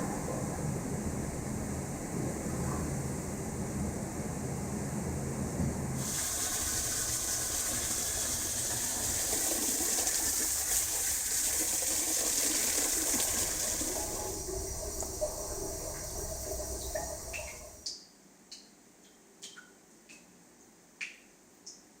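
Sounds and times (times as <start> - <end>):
water gushing through drain pipe: 6.0 - 17.9.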